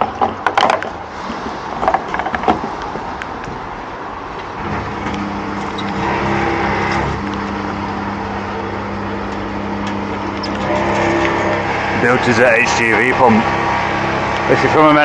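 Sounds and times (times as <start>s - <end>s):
diesel pump humming: 3.8s - 15.0s.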